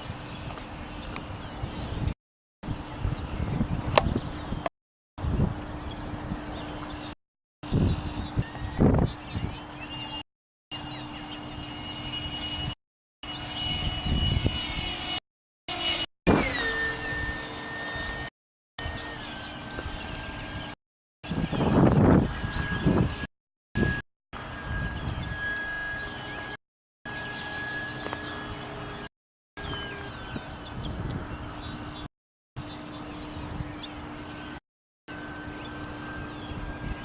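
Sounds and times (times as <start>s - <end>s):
wind gusts on microphone: 0.0s - 9.9s, 13.7s - 15.1s, 19.7s - 25.6s, 29.6s - 32.1s
electric ducted fan whine: 2.7s - 10.2s, 10.8s - 37.0s.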